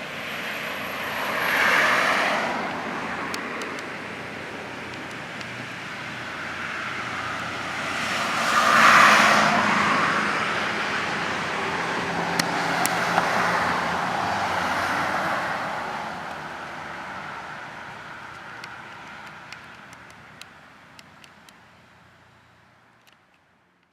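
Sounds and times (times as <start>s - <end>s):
vehicle passing by: 0.0s - 19.7s
faint clicks: 17.9s - 21.6s, 22.9s - 23.9s.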